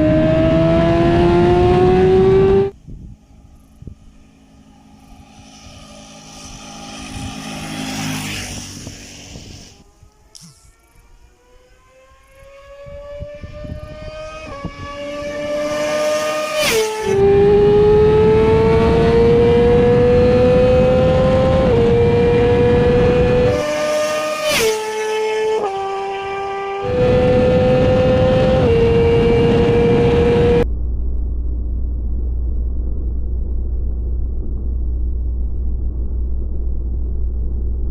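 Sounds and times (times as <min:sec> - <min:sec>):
loud wind rush: 0:00.0 - 0:10.5, 0:12.4 - 0:23.9, 0:26.8 - 0:30.6
motorcycle engine revving high: 0:00.0 - 0:30.6
low engine rumble: 0:02.7 - 0:11.4, 0:30.6 - 0:37.9.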